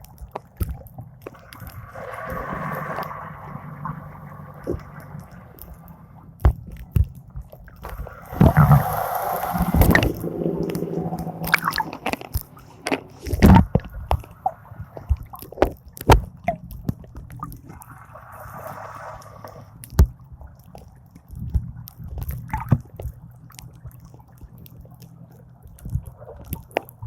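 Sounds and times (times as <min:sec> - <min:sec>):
water splashing and sloshing: 0:00.0 - 0:27.0
rushing hiss: 0:07.9 - 0:13.4.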